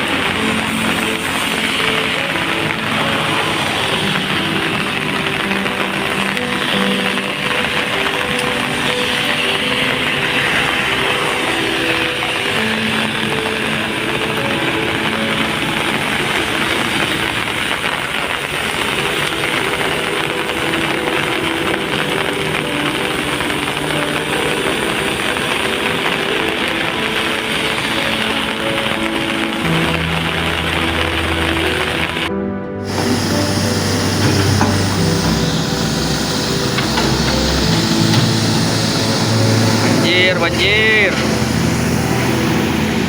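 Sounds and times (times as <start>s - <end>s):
heavy rain hissing: 0.0s - 43.0s
low held tones: 32.8s - 43.0s.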